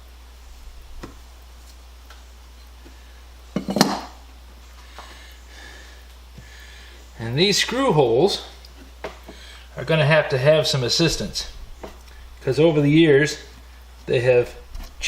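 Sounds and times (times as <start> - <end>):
hard object clattering: 3.6 - 4.1.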